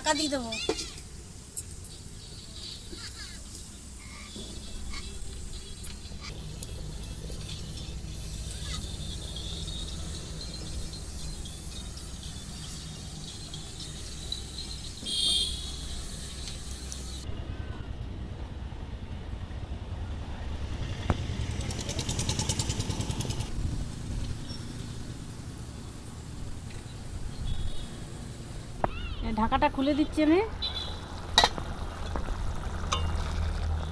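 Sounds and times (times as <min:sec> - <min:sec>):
road traffic: 0:00.0 - 0:33.9
high-pitched horn toot: 0:14.8 - 0:16.2
pulsing engine passing: 0:18.2 - 0:26.5.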